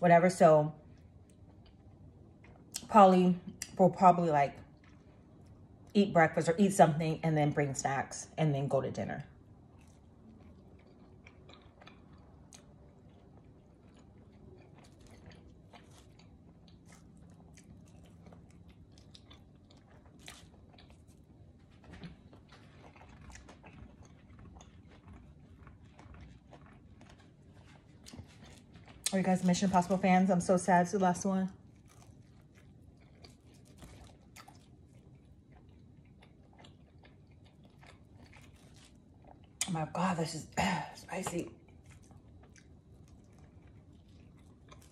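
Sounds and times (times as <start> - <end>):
chewing and biting pizza: 0.8 - 3.8, 4.5 - 5.9, 9.2 - 30.6, 31.5 - 39.7, 41.5 - 44.9
crust crunching: 14.6 - 30.7.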